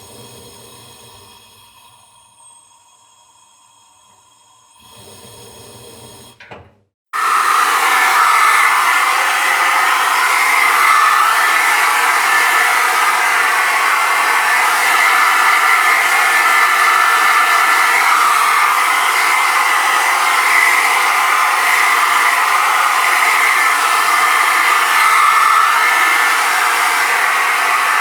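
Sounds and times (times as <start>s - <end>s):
small motor blower whirring: 7.2s - 28.0s.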